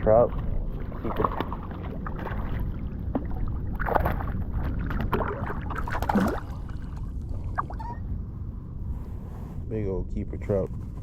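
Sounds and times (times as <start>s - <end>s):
water splashing and sloshing: 0.0s - 8.0s
wind on microphone: 0.0s - 11.0s
sharp splashes and knocks: 0.3s - 7.7s.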